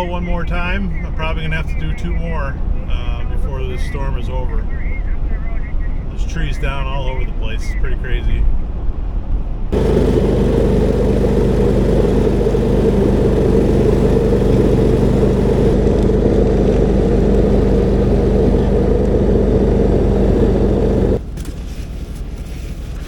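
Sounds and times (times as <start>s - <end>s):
garden tractor engine running: 9.7s - 23.0s
snowblower working through snow: 9.7s - 23.0s.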